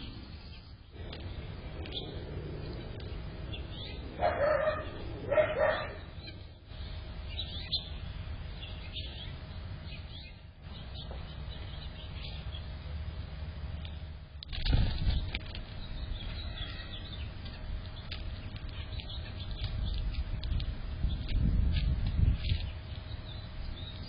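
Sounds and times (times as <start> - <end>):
low rumble: 0.0 - 16.4
small birds chirping: 0.0 - 24.0
dog barking: 4.2 - 6.1.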